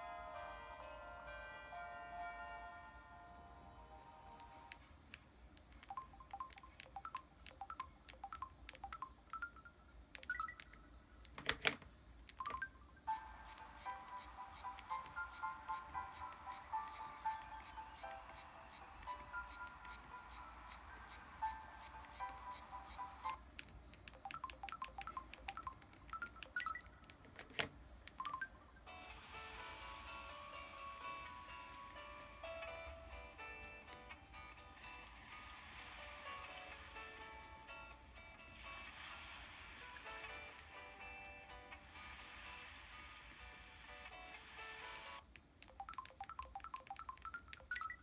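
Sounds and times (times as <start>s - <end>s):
phone ringtone: 0.0s - 4.9s, 5.8s - 11.7s, 12.4s - 23.4s, 24.2s - 48.0s
phone key presses with beeps: 4.3s - 20.1s, 21.4s - 28.6s, 45.6s - 48.0s
phone key clicks: 10.1s - 12.6s, 23.2s - 28.4s.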